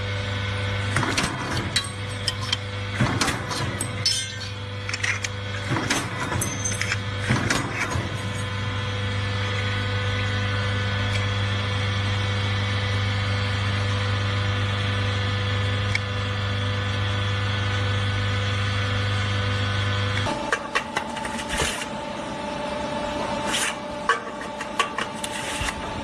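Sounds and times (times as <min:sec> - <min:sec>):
hydraulic machine motor humming: 0:00.2 - 0:14.8.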